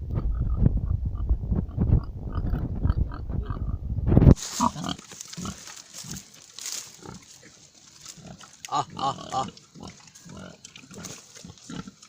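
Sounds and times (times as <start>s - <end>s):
pigs grunting: 1.7s - 3.8s, 4.4s - 12.0s.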